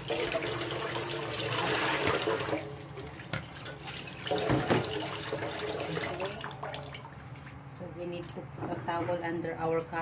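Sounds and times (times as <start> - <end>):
water running into a sink: 0.0 - 7.6.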